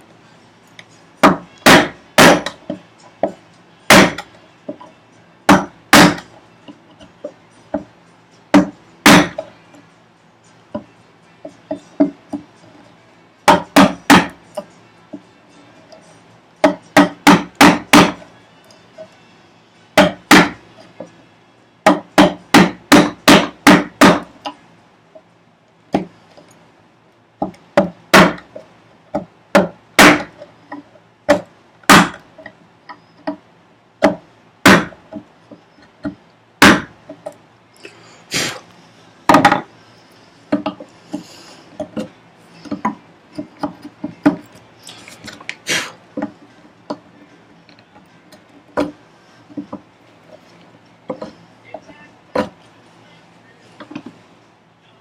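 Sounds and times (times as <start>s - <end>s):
mallet striking chisel into wood: 1.2s - 4.9s, 5.5s - 6.8s, 8.5s - 9.5s, 10.7s - 12.5s, 13.5s - 15.2s, 16.6s - 18.3s, 20.0s - 20.6s, 21.8s - 24.6s, 25.9s - 26.1s, 27.4s - 32.5s, 34.0s - 35.2s, 36.0s - 37.3s, 39.3s - 39.7s, 40.5s - 40.9s, 52.3s - 52.6s.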